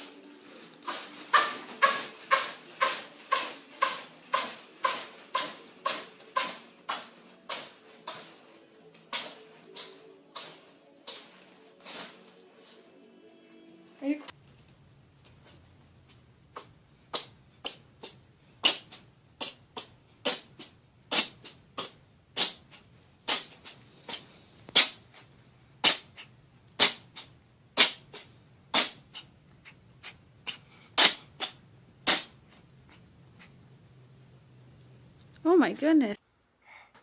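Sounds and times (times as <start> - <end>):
cat sneezing: 0.8 - 12.3, 16.6 - 32.6.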